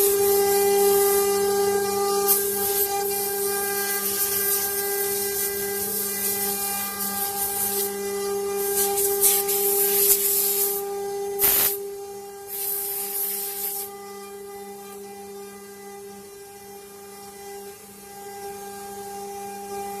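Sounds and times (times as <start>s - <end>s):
router spindle whining: 0.0s - 9.9s
bit cutting wood hiss: 0.0s - 14.0s.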